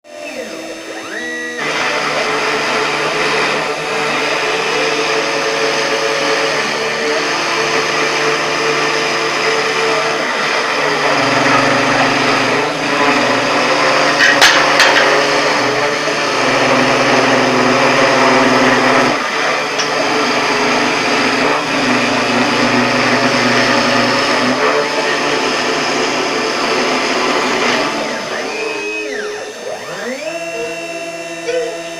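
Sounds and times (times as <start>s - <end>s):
cnc spindle motor whine: 0.1s - 31.9s
machine hum shifting in pitch: 27.8s - 31.9s.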